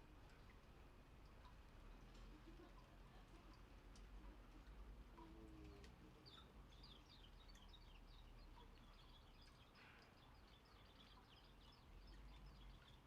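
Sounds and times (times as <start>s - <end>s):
songbirds twittering: 5.7s - 13.0s.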